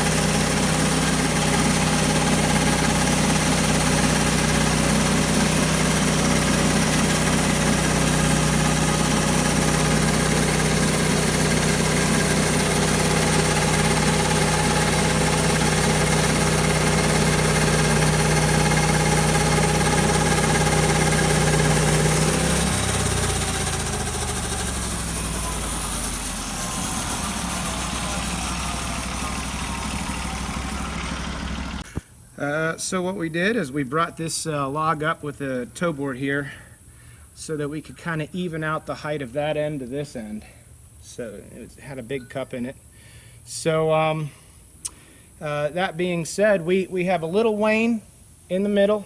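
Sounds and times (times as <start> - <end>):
engine winding down: 0.0 - 32.0
sawmill engine running: 0.0 - 32.0.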